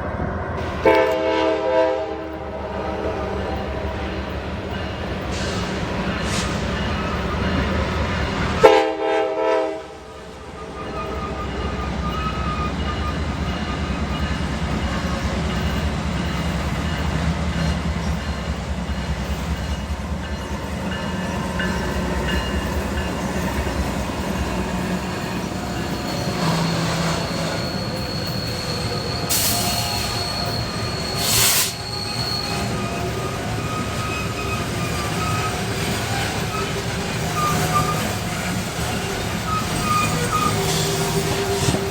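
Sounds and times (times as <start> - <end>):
train wheels rumbling on rails: 0.0 - 41.9
multi-tone train horn: 0.6 - 4.0, 8.6 - 11.5, 24.5 - 27.8, 39.4 - 41.9
high-pitched train squeal: 0.6 - 41.9.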